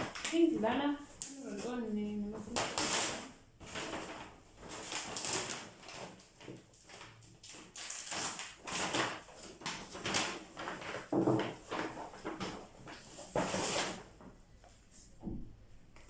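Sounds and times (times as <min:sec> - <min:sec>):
packaging rustling and crinkling: 0:02.4 - 0:14.4.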